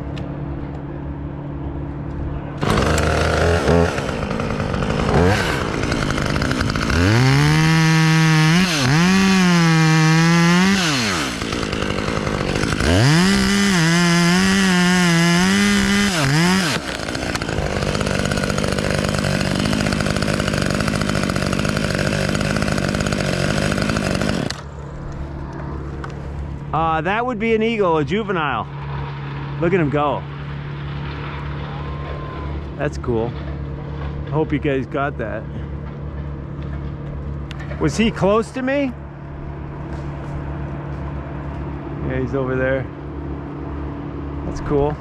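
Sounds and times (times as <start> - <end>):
chainsaw cutting wood: 2.6 - 24.8
chainsaw running steadily: 2.6 - 26.2.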